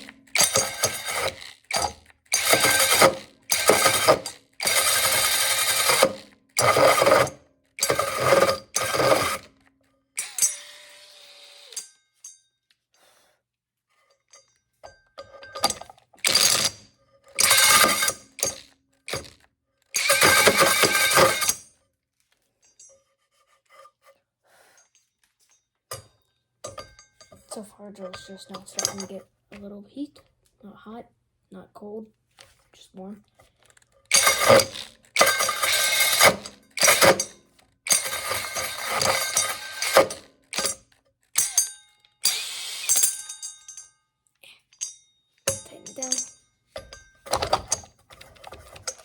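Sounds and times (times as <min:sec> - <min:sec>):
drill cutting with hole saw: 0:00.0 - 0:09.5, 0:10.2 - 0:11.9, 0:16.3 - 0:16.7, 0:17.4 - 0:19.3, 0:20.0 - 0:21.6, 0:34.1 - 0:40.8, 0:41.4 - 0:43.2
quieter drill whir: 0:00.0 - 0:09.5, 0:10.2 - 0:11.9, 0:17.4 - 0:19.3, 0:20.0 - 0:21.6, 0:34.1 - 0:37.3, 0:37.9 - 0:40.8, 0:42.2 - 0:43.2.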